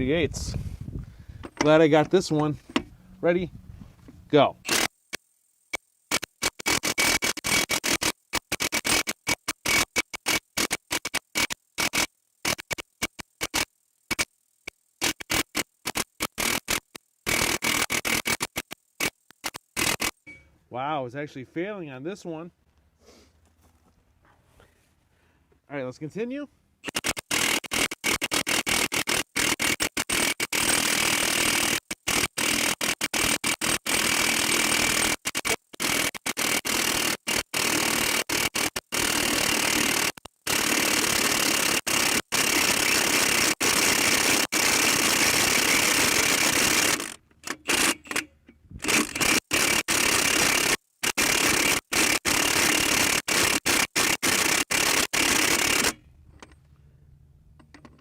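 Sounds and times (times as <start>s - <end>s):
impact wrench hammering on nut: 26.8s - 56.6s.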